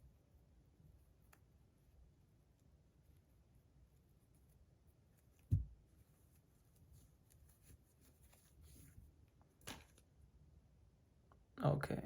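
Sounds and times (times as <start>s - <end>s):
faint rustling: 3.0s - 10.1s
dull thump on desk: 5.5s - 5.8s.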